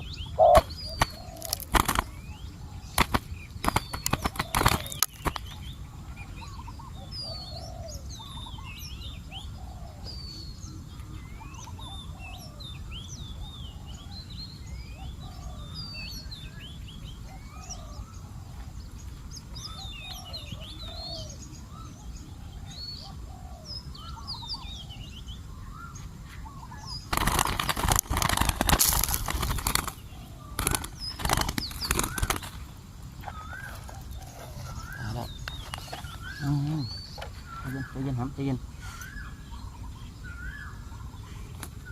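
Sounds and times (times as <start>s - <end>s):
small birds chirping: 0.0s - 41.9s
dove wings flapping: 0.4s - 2.2s, 2.9s - 5.6s, 27.0s - 36.4s.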